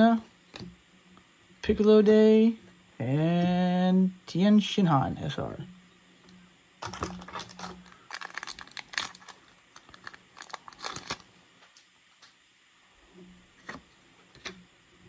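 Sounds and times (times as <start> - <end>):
foil wrapper crinkling and tearing: 6.8 - 11.3.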